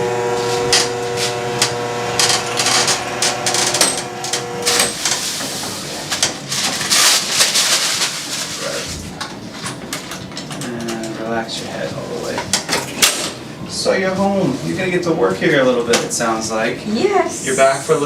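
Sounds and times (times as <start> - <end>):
electric table motor humming: 0.0 - 6.2.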